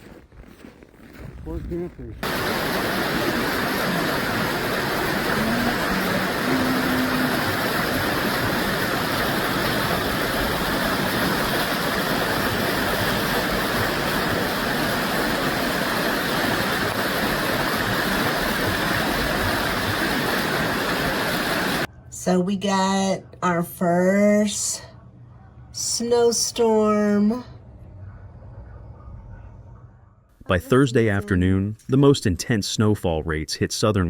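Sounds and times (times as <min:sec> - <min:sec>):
steady rushing noise: 0:02.2 - 0:21.9.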